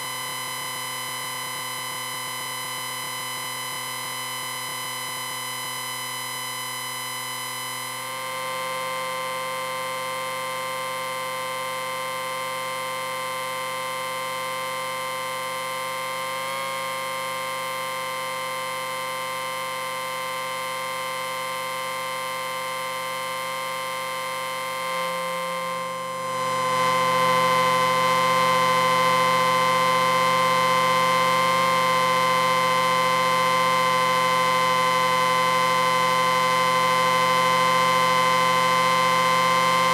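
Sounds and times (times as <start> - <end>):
amplifier beeping drone: 20.6 - 39.9.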